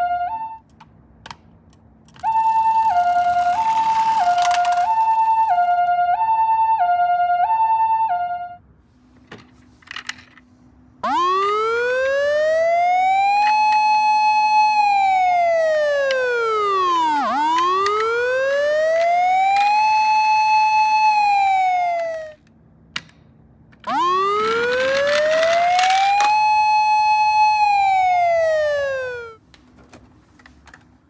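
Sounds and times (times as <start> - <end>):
two-tone ambulance siren: 0.0 - 0.6, 2.2 - 8.6, 11.0 - 22.4, 23.8 - 29.4
wailing siren: 0.0 - 0.6, 2.2 - 8.6, 11.0 - 22.4, 23.8 - 29.4.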